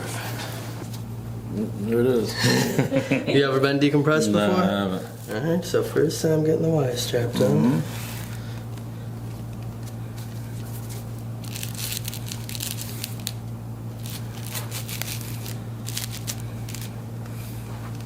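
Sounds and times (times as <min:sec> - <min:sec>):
steady low hum: 0:00.0 - 0:18.0
crinkling and rustling handling: 0:08.0 - 0:18.0.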